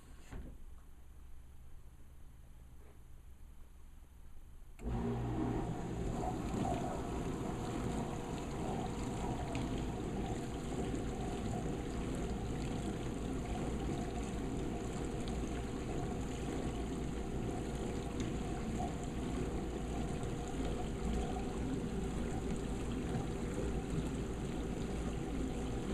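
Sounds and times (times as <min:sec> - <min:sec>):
circulation pump humming: 0:04.6 - 0:25.9
dishwasher water spraying: 0:04.8 - 0:15.2.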